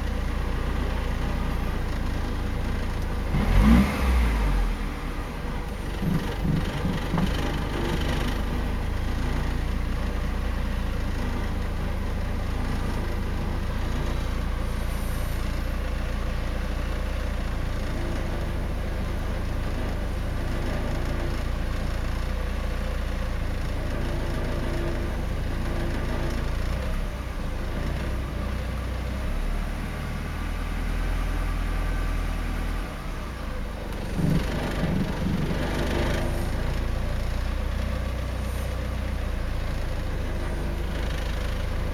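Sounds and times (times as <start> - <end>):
car engine running: 0.0 - 41.9.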